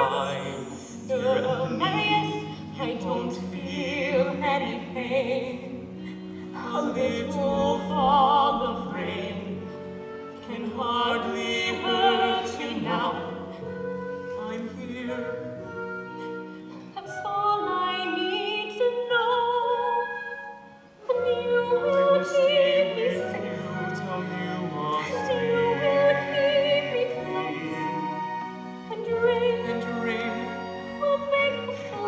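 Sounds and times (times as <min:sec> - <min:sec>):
person singing with vibrato: 0:00.0 - 0:05.6
orchestral accompaniment: 0:00.0 - 0:32.0.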